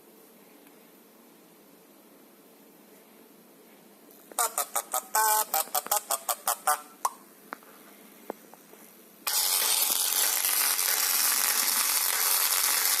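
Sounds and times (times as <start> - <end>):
tablet speaker hissing: 9.3 - 13.0.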